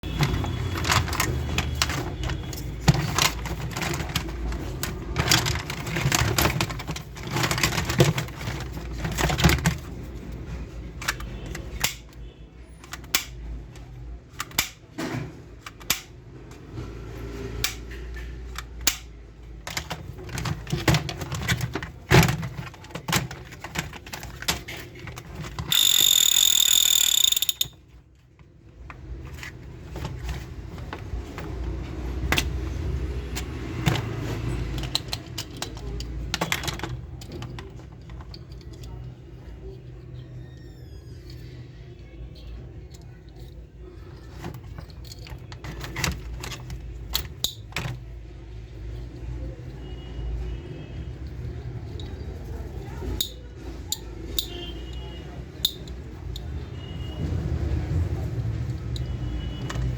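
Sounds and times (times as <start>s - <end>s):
plastic toy parts clicking: 0.1s - 16.6s, 17.5s - 34.0s, 34.6s - 41.5s, 42.3s - 48.0s, 53.0s - 55.0s, 55.6s - 56.6s
high-pitched electronic tone: 25.7s - 27.7s.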